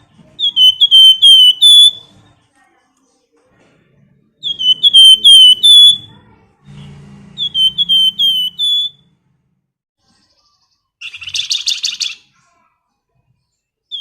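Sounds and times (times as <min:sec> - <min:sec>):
songbird whistling: 0:00.4 - 0:02.1, 0:04.4 - 0:06.1, 0:07.4 - 0:09.1, 0:11.0 - 0:12.3.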